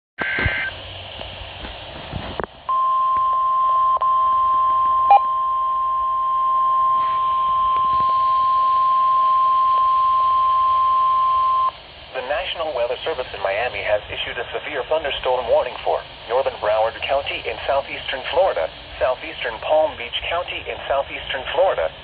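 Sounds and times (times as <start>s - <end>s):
radio hiss: 0.2s - 2.5s, 6.8s - 22.0s
steady high alarm tone: 2.7s - 11.8s.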